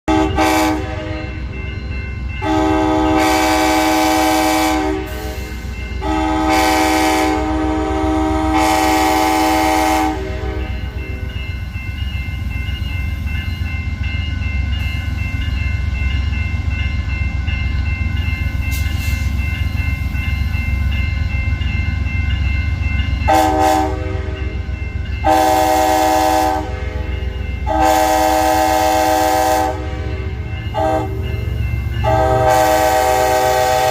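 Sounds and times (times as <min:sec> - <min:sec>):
locomotive air horn blasts: 0:00.0 - 0:01.3, 0:02.4 - 0:10.8, 0:23.3 - 0:24.5, 0:25.3 - 0:27.1, 0:27.7 - 0:31.2, 0:32.0 - 0:33.9
train rumbling: 0:00.0 - 0:33.9.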